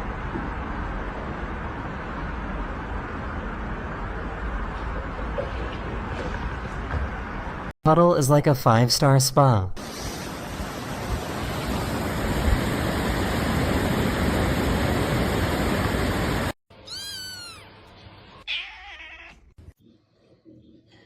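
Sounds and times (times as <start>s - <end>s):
cat meowing: 16.7s - 17.8s, 18.4s - 19.5s.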